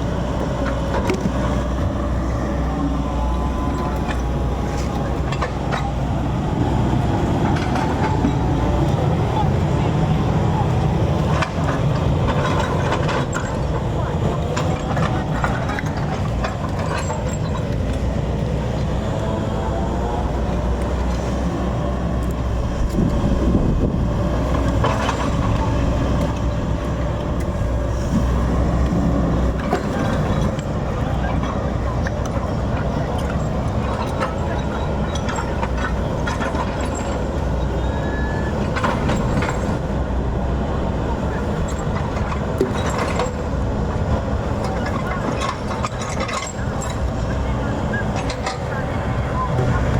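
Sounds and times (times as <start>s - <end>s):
diesel engine running under load: 0.0s - 49.9s.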